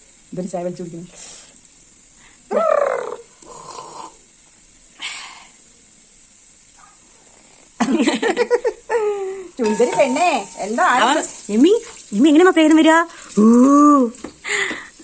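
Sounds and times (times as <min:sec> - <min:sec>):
parrot chattering: 0:02.5 - 0:03.8
parrot calling and squawking: 0:02.5 - 0:04.0, 0:09.6 - 0:11.2.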